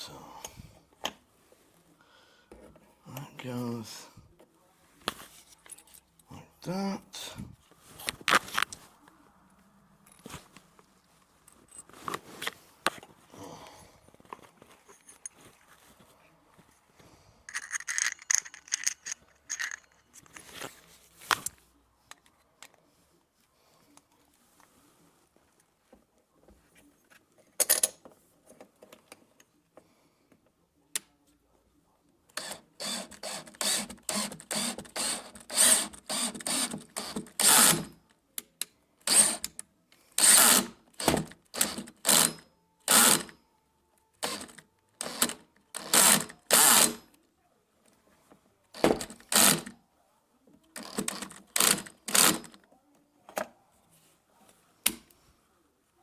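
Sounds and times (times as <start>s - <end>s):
power screwdriver bursts: 32.4s - 37.9s, 39.0s - 39.5s, 40.2s - 43.3s, 44.2s - 47.0s, 48.8s - 49.7s, 50.8s - 52.6s.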